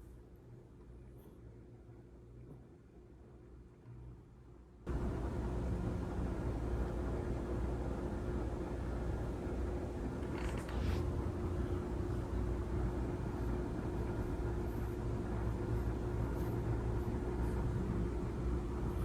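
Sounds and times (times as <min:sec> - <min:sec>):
low rumble with hum: 0:04.9 - 0:19.0.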